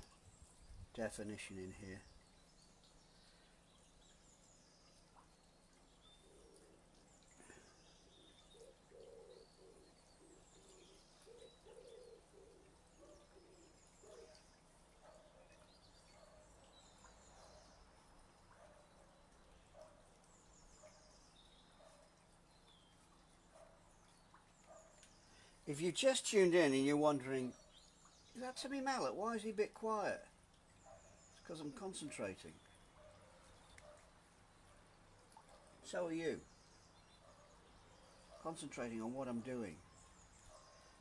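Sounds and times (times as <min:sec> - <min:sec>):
small birds chirping: 0:00.0 - 0:41.0
pigeon cooing: 0:08.2 - 0:14.4.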